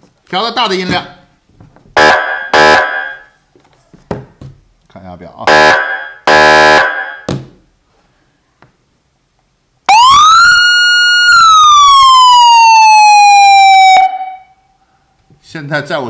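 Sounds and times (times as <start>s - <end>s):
electronic siren wailing: 2.0s - 3.3s, 5.5s - 7.3s, 9.9s - 14.6s
horn blast: 5.5s - 7.0s.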